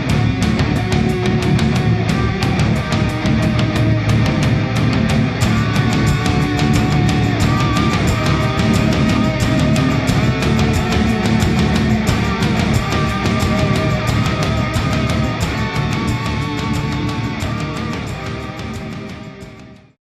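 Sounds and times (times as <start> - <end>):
heavy rock music: 0.0 - 20.0.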